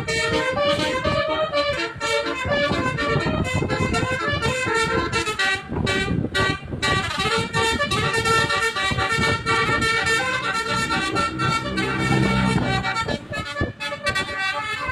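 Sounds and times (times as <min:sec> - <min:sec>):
musical bus horn playing a tune: 0:00.0 - 0:14.9
low rumble: 0:08.0 - 0:13.6.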